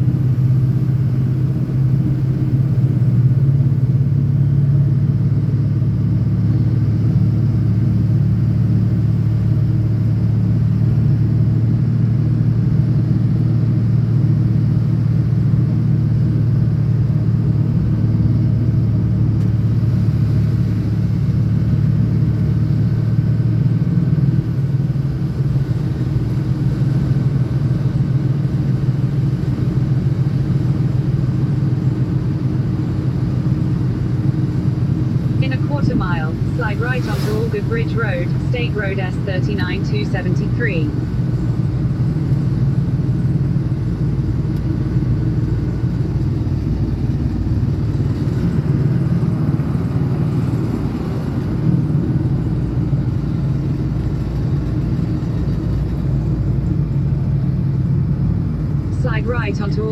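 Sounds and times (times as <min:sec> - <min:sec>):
pickup truck engine and road drone: 0:00.0 - 0:59.9.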